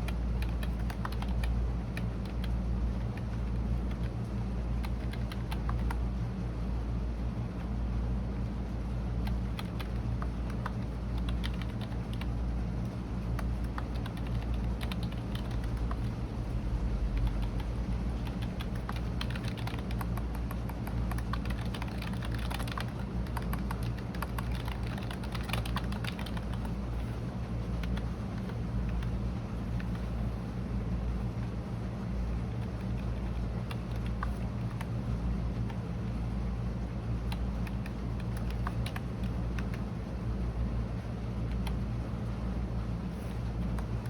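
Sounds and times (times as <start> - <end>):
keyboard typing clicks: 0.0 - 4.2, 4.8 - 6.0, 9.2 - 12.3, 13.3 - 16.0, 17.2 - 26.8, 27.8 - 29.1, 32.6 - 34.9, 37.2 - 39.9
steady low hum: 0.0 - 44.0.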